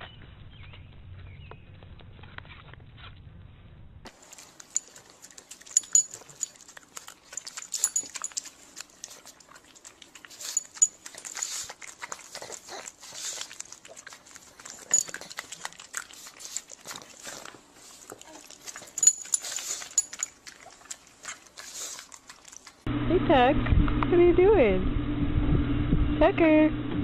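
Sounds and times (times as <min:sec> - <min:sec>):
dog making clicks and bursts: 0:04.1 - 0:22.9.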